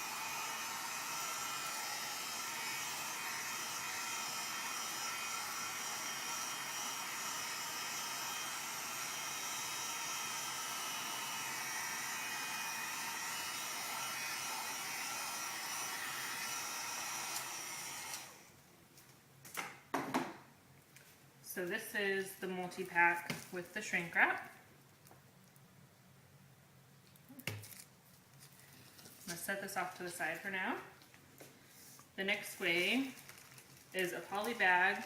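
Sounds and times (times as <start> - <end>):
heat gun blowing: 0.0 - 18.5, 34.0 - 35.0.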